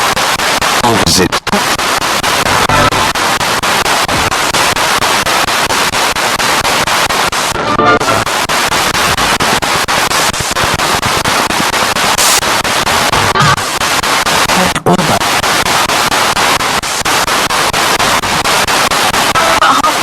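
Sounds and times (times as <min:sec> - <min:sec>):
snatch of broadcast voice: 0:00.0 - 0:04.6, 0:07.6 - 0:17.2, 0:18.8 - 0:20.0
stuttering radio static: 0:00.0 - 0:20.0.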